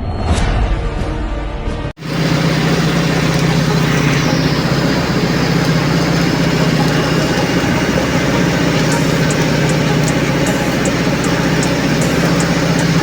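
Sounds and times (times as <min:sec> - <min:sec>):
music: 0:00.0 - 0:02.0, 0:06.9 - 0:13.0
engine humming: 0:02.0 - 0:13.0.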